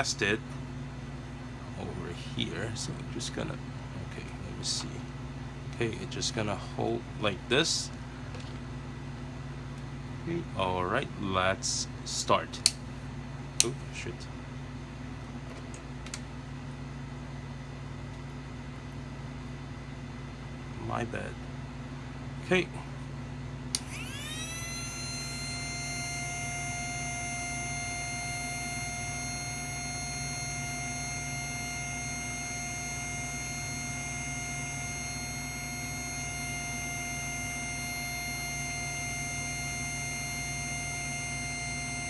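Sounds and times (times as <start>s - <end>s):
switch click: 23.7s - 24.0s
electric motor whine: 23.7s - 42.0s.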